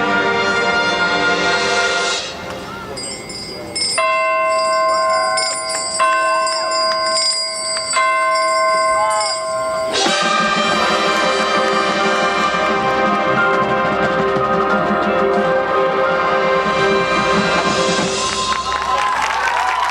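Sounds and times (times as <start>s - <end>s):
marching band playing: 0.0s - 2.9s, 9.9s - 19.4s
bell tolling: 2.6s - 18.8s.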